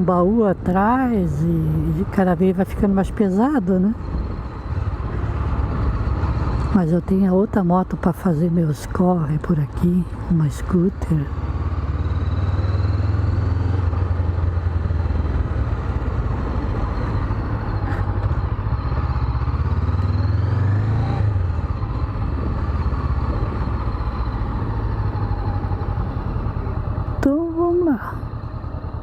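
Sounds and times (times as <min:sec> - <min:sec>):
motorcycle engine running: 0:03.3 - 0:29.0
wind noise on microphone: 0:21.2 - 0:26.8.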